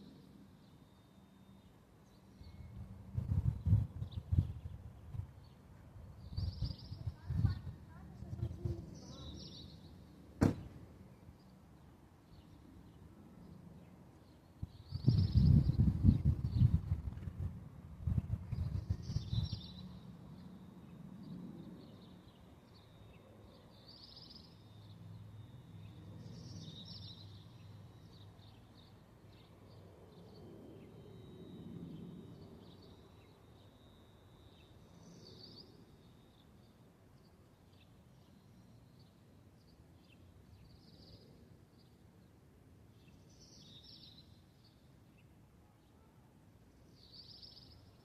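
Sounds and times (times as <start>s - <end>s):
small birds chirping: 0.0s - 17.2s, 18.1s - 31.3s, 31.9s - 46.1s, 46.7s - 48.0s
low outdoor rumble: 15.0s - 21.9s.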